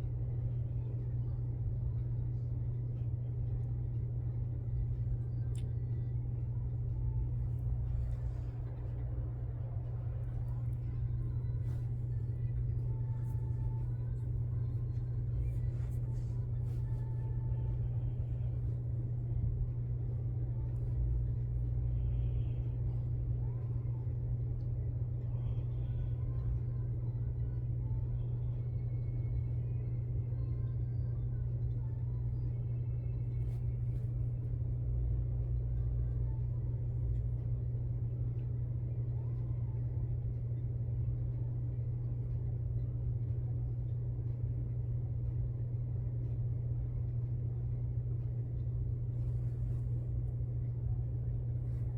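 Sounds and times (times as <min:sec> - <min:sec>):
low hum: 0:00.0 - 0:51.9.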